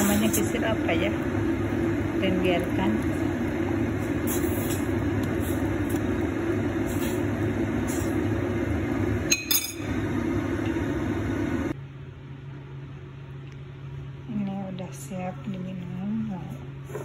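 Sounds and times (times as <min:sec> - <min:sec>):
pot boiling with rushing sound: 0:00.0 - 0:11.8
sharp ringing clink: 0:09.3 - 0:09.9.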